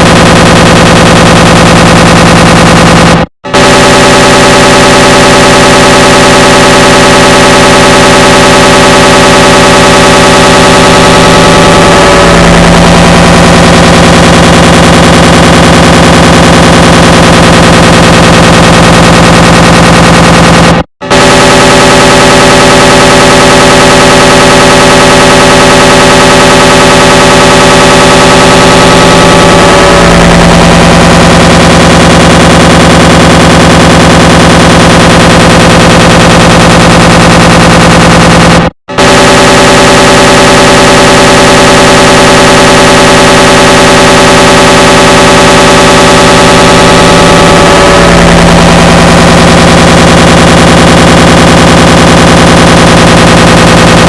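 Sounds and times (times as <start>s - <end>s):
steady low hum: 0.0s - 40.2s
distorted buzzing noise: 0.0s - 54.0s
layered error sound din: 0.0s - 54.0s.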